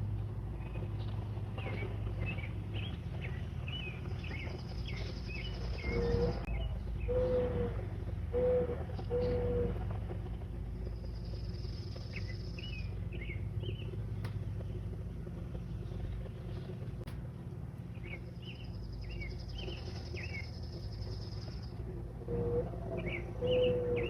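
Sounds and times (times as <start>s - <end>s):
low background rumble: 0.0s - 24.0s
songbird buzzy trill: 17.7s - 24.0s.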